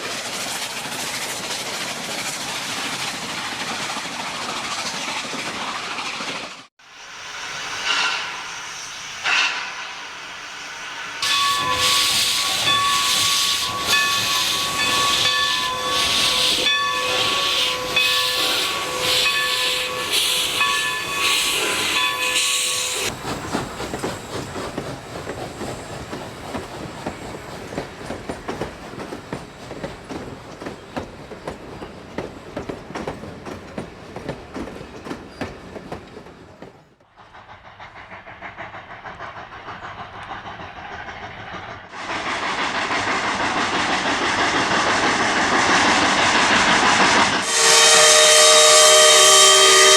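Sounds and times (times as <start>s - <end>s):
steam hissing: 0.0s - 36.5s, 37.1s - 49.9s
train clattering: 7.3s - 49.9s
locomotive chime whistle blasts: 11.2s - 23.1s, 47.4s - 49.9s.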